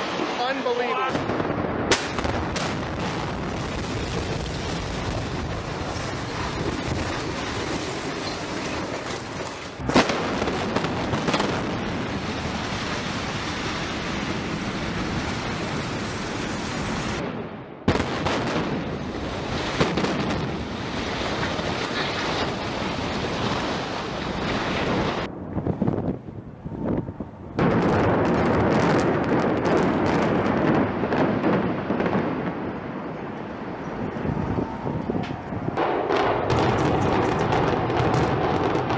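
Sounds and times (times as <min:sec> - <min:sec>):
building collapsing rumble: 0:00.0 - 0:38.9
demolition charges cracking: 0:01.1 - 0:14.9
wind noise on microphone: 0:17.9 - 0:38.9.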